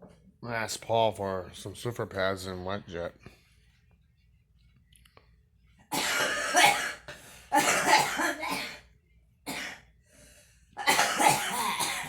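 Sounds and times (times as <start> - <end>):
woman coughing: 5.9 - 8.9, 9.5 - 9.9, 10.8 - 12.0.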